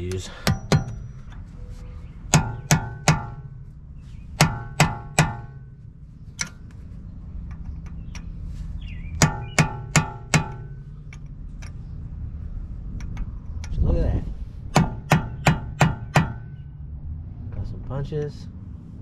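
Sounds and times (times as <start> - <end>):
hammer striking metal punch: 0.4 - 1.3, 2.3 - 3.6, 4.4 - 5.7, 9.2 - 10.8, 14.7 - 16.6.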